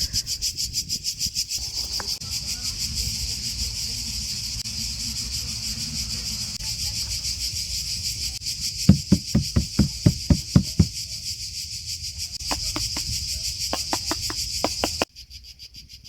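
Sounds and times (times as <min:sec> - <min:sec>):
cicadas chirring: 0:00.0 - 0:16.0
short dull knocks: 0:08.9 - 0:10.9.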